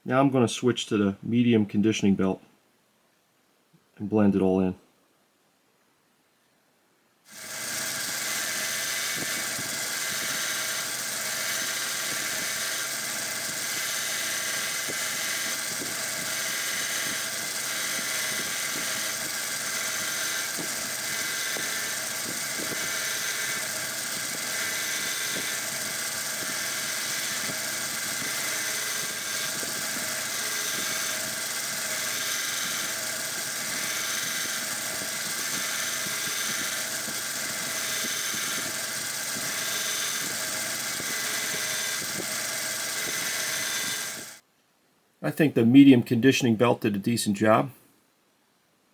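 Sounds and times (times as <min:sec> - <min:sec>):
belt sander whining on metal: 0:07.3 - 0:44.4.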